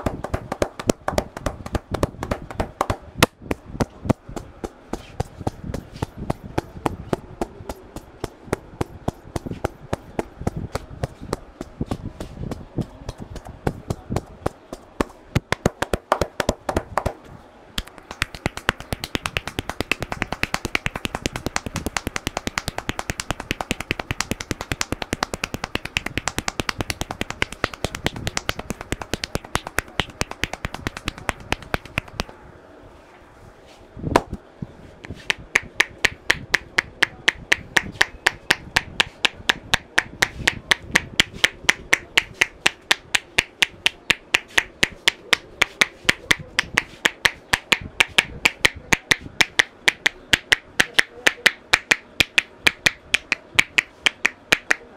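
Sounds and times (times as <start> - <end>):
hands tapping on head: 0.0 - 17.2, 17.8 - 32.3, 35.0 - 54.8.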